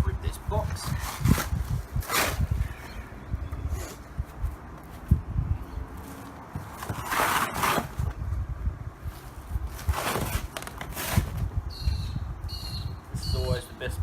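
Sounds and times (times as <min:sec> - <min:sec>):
cardboard tearing: 0:06.8 - 0:08.1, 0:09.7 - 0:11.4.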